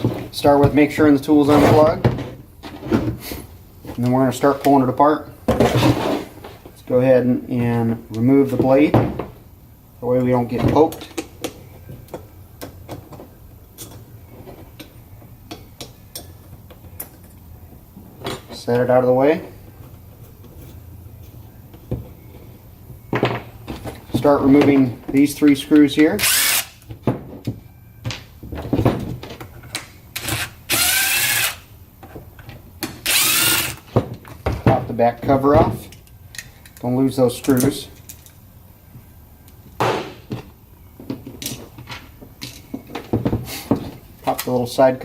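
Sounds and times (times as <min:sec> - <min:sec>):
impact driver motor whine: 0:33.1 - 0:33.8.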